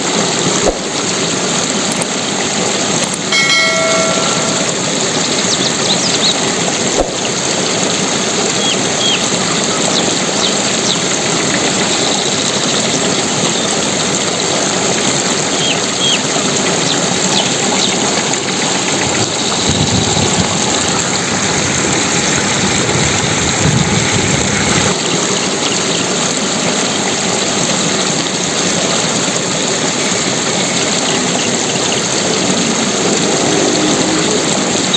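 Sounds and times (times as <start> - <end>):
loud rushing water: 0.0 - 34.9
brief pitched tone: 3.4 - 5.0.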